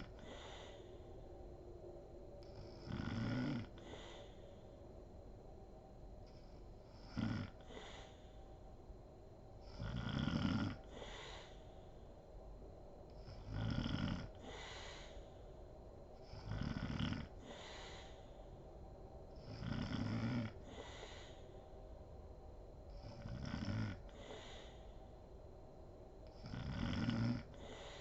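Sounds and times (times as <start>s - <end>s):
woman snoring: 0.0s - 0.9s, 2.5s - 4.4s, 7.0s - 8.4s, 9.7s - 11.7s, 13.2s - 15.2s, 16.2s - 18.2s, 19.4s - 21.5s, 22.9s - 24.9s, 26.2s - 28.0s
breathy exhale: 0.0s - 1.2s, 3.7s - 4.7s, 7.6s - 8.5s, 10.8s - 12.1s, 14.4s - 15.6s, 17.3s - 18.6s, 20.5s - 21.8s, 24.1s - 25.2s, 27.5s - 28.0s.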